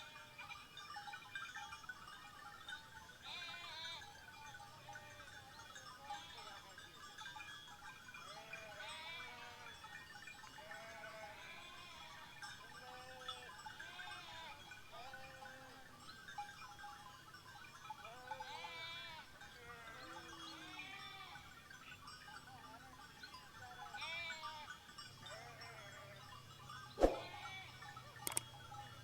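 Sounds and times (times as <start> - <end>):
faint sheep bleating: 0.0 - 0.4, 3.2 - 4.1, 6.0 - 6.7, 8.4 - 9.8, 10.6 - 15.8, 18.1 - 21.6, 23.7 - 26.2.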